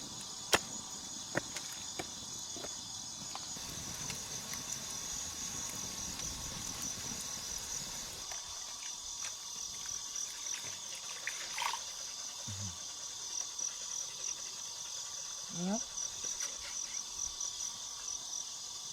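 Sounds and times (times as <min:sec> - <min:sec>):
high-pitched insect chorus: 0:00.0 - 0:18.9.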